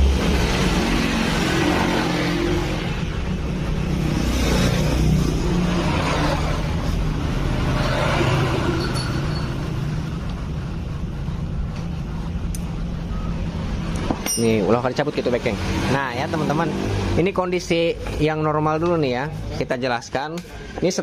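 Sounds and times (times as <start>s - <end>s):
vehicle engine revving: 0.0s - 11.3s.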